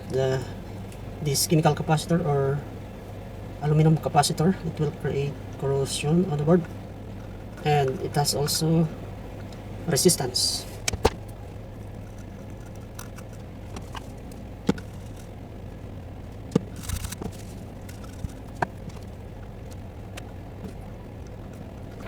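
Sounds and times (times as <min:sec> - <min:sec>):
low electrical hum: 0:00.0 - 0:22.0
small tools clicking: 0:11.9 - 0:15.3
tool scraping: 0:12.0 - 0:15.3.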